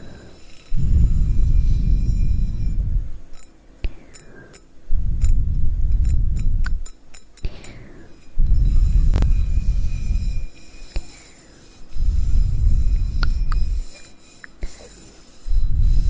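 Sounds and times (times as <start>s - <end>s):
breathing close into microphone: 0.0s - 3.2s, 3.9s - 6.4s, 7.5s - 14.0s.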